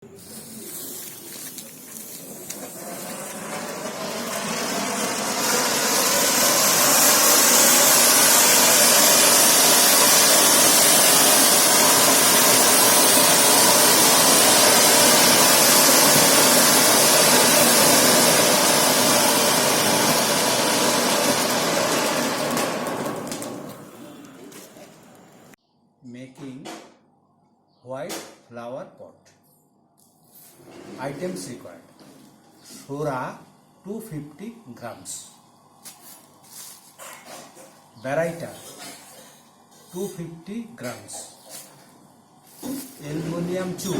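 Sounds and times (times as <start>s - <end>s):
firework hissing sparks: 0.1s - 25.6s.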